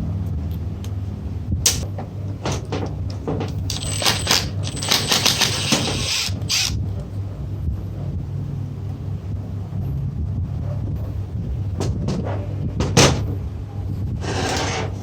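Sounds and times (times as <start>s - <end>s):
metal tools clinking: 3.5s - 6.8s.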